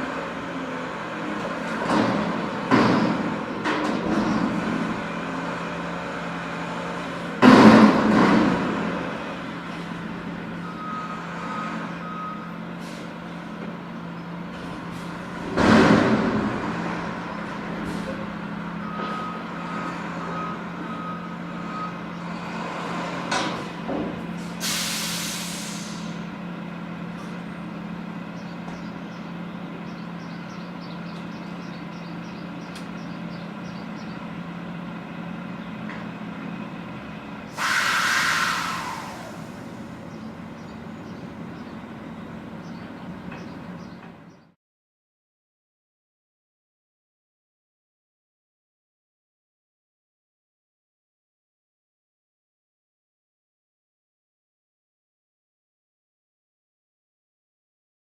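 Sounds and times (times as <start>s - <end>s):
garbage truck diesel engine: 0.0s - 44.6s
loud metallic crashes: 7.4s - 9.0s, 15.3s - 17.2s
air brake hiss: 12.8s - 13.1s, 24.4s - 26.2s, 37.5s - 39.9s.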